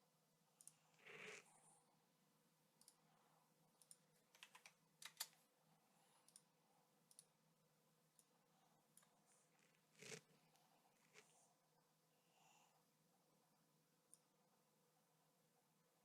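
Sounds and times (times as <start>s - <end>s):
mouse and keyboard clicks: 3.8s - 5.4s, 10.0s - 10.3s.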